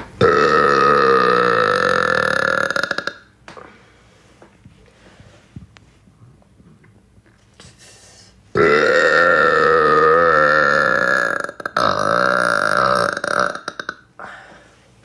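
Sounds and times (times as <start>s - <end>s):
woman burping: 0.2s - 3.3s, 8.6s - 14.1s.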